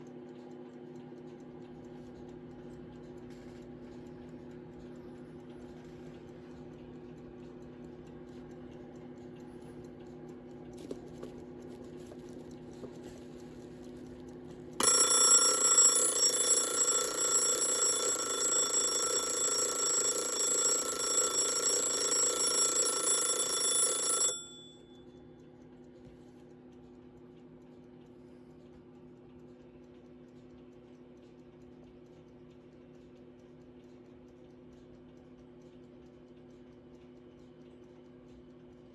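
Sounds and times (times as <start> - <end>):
alarm clock ticking: 0.0 - 38.9
alarm bell ringing: 14.8 - 25.0.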